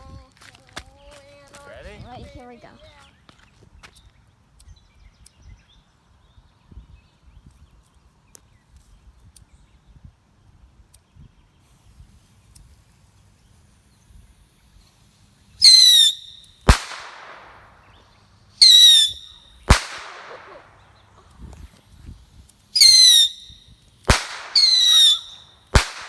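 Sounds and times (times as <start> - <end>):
firework whistles: 13.5 - 26.0
firework bangs: 15.6 - 21.7, 22.8 - 26.0.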